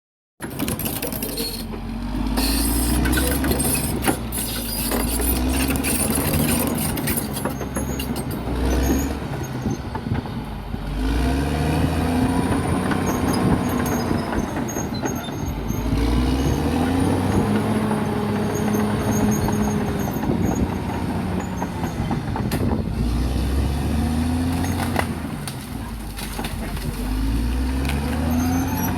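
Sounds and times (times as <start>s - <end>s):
bulldozer diesel engine working: 0.4s - 28.9s
knocks and clanks: 2.4s - 8.6s.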